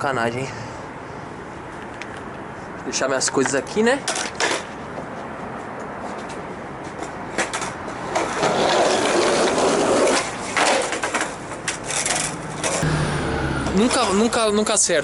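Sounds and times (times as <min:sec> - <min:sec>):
skateboard wheels rolling on pavement: 0:03.0 - 0:12.9.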